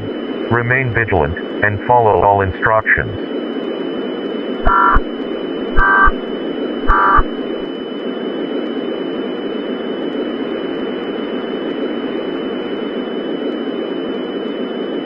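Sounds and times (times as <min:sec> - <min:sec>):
broadcast static hiss: 0:00.0 - 0:08.3
constant high tone: 0:04.6 - 0:07.8.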